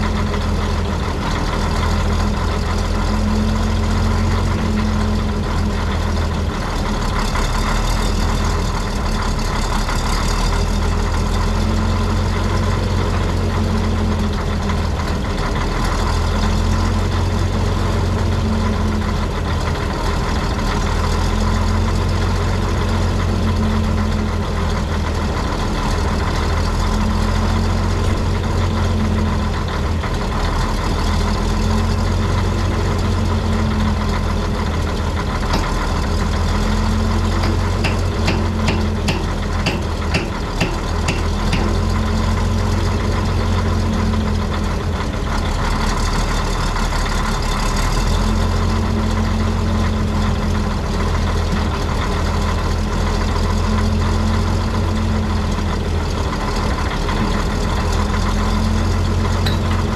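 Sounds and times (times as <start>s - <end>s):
diesel engine idling: 0.0s - 59.9s.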